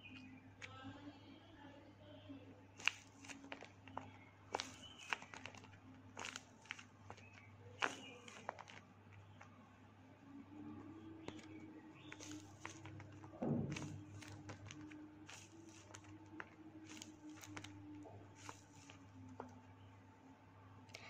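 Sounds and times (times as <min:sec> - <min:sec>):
paper and tape crinkling: 0:02.7 - 0:09.6, 0:10.6 - 0:19.8
loud thump: 0:13.4 - 0:13.9.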